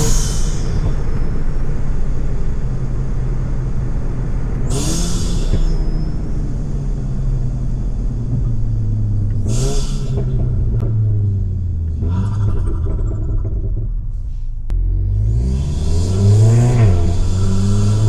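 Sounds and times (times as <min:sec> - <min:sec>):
car engine droning: 0:00.0 - 0:18.0
turbo flutter hiss: 0:04.7 - 0:06.1, 0:09.5 - 0:10.4.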